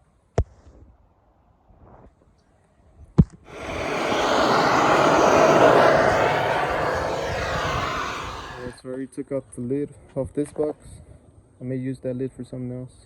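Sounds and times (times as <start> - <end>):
vehicle passing by: 3.5 - 8.8.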